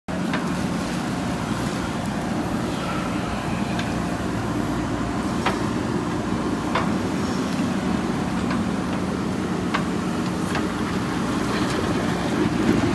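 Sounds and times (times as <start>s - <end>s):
diesel engine running: 0.1s - 12.9s.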